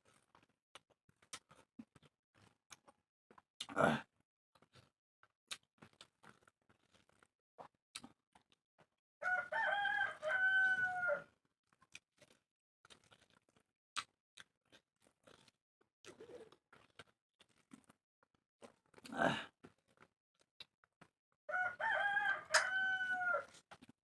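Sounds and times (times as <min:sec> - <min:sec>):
rooster crowing: 0:09.2 - 0:11.3, 0:21.5 - 0:23.5.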